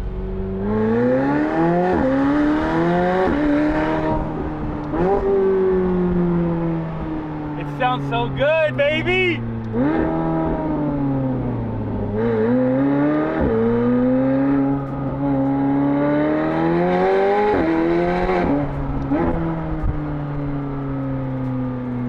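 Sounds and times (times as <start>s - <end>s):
car engine accelerating: 9.4s - 22.0s.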